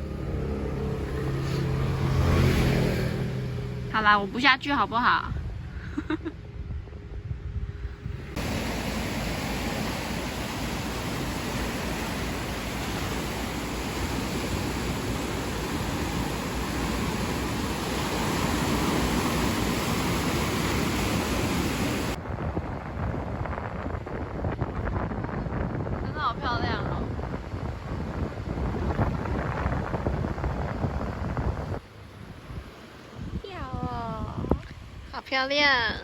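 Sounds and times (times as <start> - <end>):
steady rushing noise: 6.4 - 33.8.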